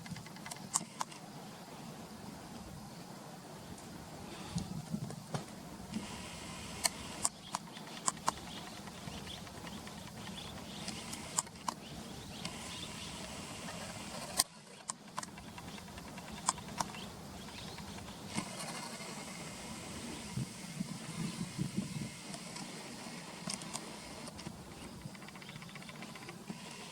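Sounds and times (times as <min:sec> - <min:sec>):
insects chirring: 0:05.9 - 0:26.9.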